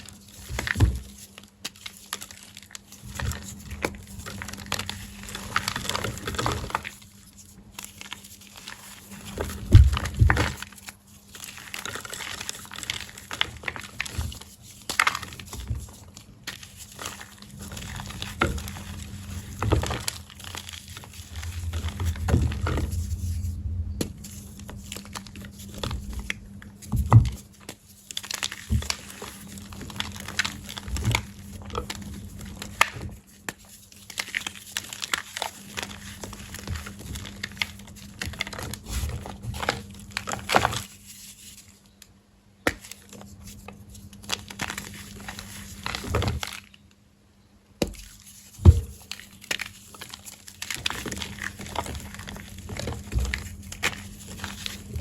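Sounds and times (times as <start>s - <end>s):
faint steady hum: 0.0s - 55.0s
chalk blocks being crushed: 24.0s - 41.8s, 47.8s - 55.0s.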